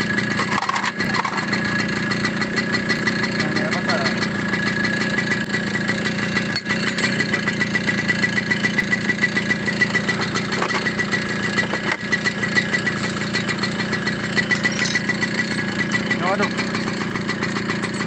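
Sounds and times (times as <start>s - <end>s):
moped engine idling: 0.0s - 18.0s.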